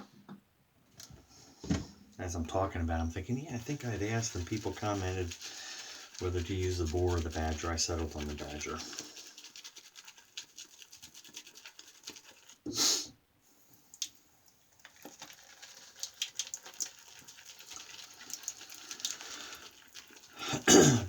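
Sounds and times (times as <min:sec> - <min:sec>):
razor scraping stubble: 0:03.6 - 0:12.5.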